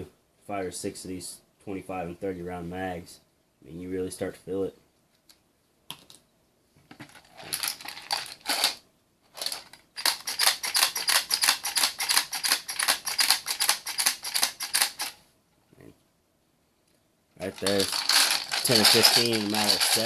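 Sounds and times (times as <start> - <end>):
cartridges rattling: 9.4 - 15.2, 17.4 - 20.0
sharp metallic clicks of cartridges: 9.5 - 15.2.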